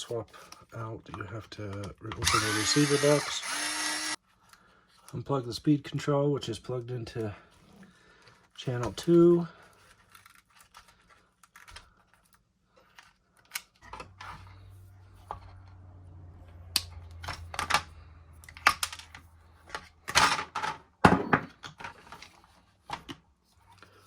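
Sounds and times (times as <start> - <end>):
plastic parts clicking and rattling: 8.3 - 14.2, 16.8 - 20.8.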